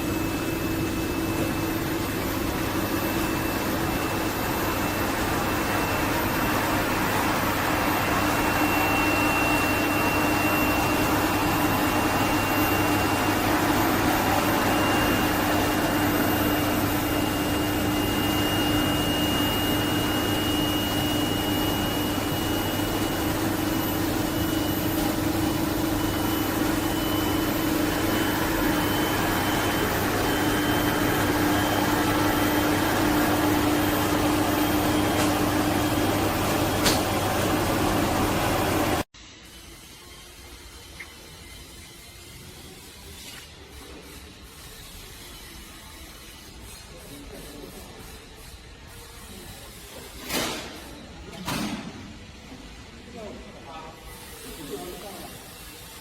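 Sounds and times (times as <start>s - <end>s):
faint high whine rising: 0.0s - 39.1s
machine motor humming: 0.0s - 39.1s.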